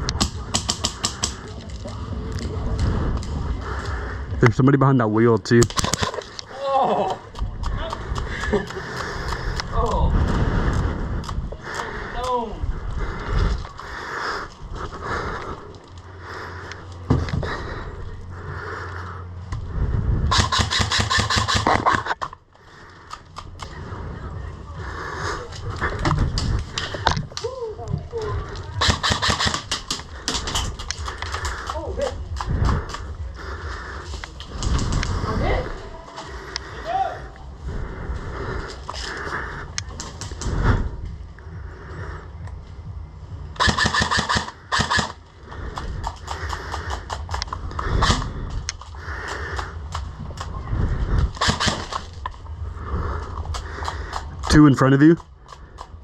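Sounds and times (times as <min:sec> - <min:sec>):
airsoft rifle shots: 0:00.2 - 0:01.4, 0:20.3 - 0:22.2, 0:28.8 - 0:30.0, 0:43.6 - 0:45.2, 0:48.0 - 0:48.3, 0:51.3 - 0:52.1.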